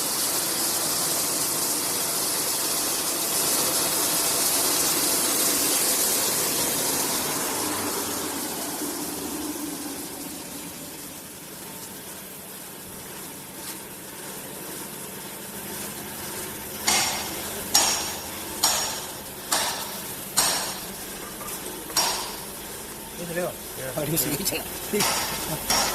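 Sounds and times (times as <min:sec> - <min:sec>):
wood planing machine rushing: 0:00.0 - 0:21.0
sharp ringing knocks: 0:16.8 - 0:21.0, 0:21.9 - 0:22.5, 0:24.9 - 0:25.9.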